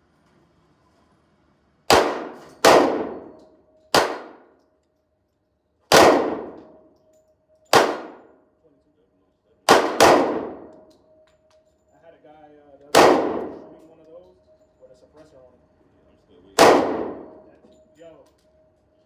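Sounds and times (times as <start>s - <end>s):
pistol shots indoors: 1.9s - 4.6s, 5.9s - 6.9s, 7.6s - 8.4s, 9.7s - 11.6s, 12.9s - 13.8s, 16.6s - 17.6s.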